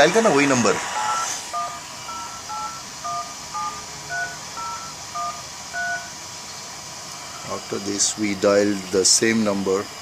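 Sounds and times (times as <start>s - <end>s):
steady hiss: 0.0s - 10.0s
touch-tone beeps: 1.0s - 6.2s, 7.3s - 7.9s.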